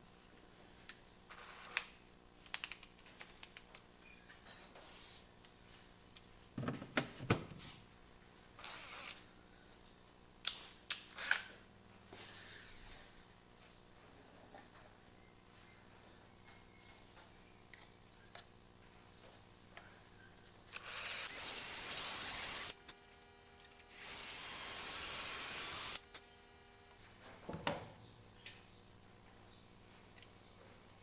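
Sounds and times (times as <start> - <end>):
cordless drill drilling: 20.8 - 22.8
drill bit hissing: 20.9 - 22.8, 23.9 - 26.1.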